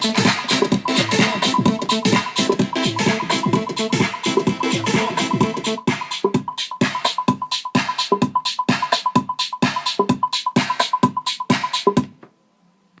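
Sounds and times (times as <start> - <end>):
electronic music with drum-machine beat: 0.0 - 12.2.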